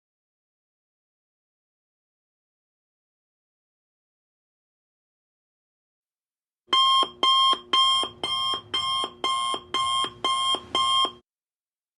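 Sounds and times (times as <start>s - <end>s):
timer alarm beeping: 6.7s - 11.2s.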